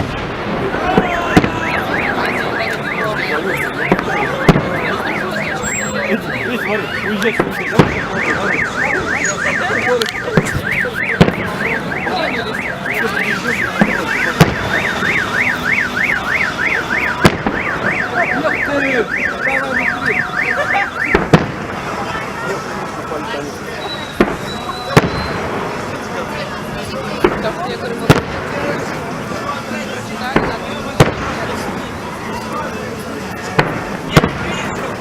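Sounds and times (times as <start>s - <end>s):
firework bangs: 0.0s - 29.5s, 30.2s - 35.0s
car alarm warbling: 0.9s - 21.4s, 22.1s - 25.5s.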